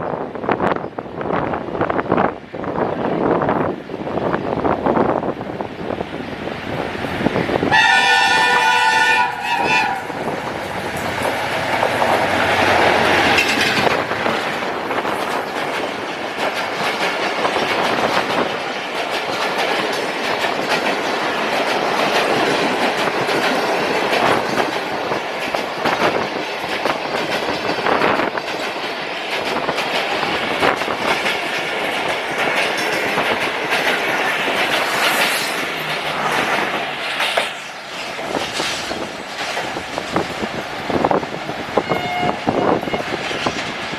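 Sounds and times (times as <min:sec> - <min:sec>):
train rumbling past: 0:00.0 - 0:43.9
wheels clickety-clack on rails: 0:00.4 - 0:43.9
train horn: 0:07.7 - 0:10.3, 0:41.8 - 0:43.2.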